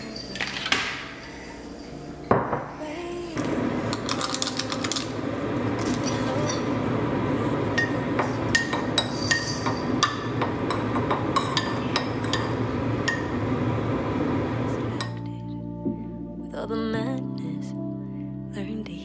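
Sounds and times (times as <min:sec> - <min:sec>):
tableware clinking: 0:00.0 - 0:02.8, 0:05.8 - 0:06.8, 0:07.8 - 0:13.5.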